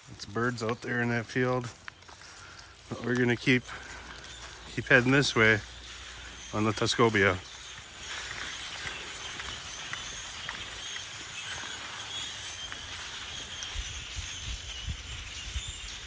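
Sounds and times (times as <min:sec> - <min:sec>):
outdoor ambience hiss: 0:00.0 - 0:16.0
faint bird chirps: 0:00.1 - 0:16.0.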